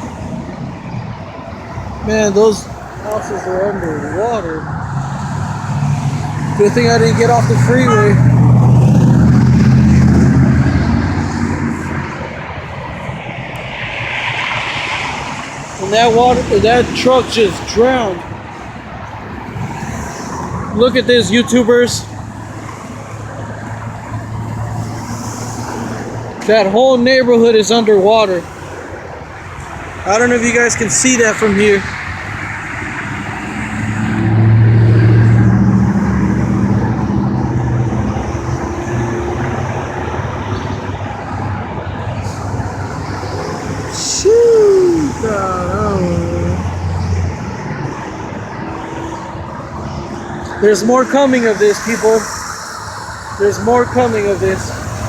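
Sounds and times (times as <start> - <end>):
vehicle engine and road drone: 0.0 - 55.0.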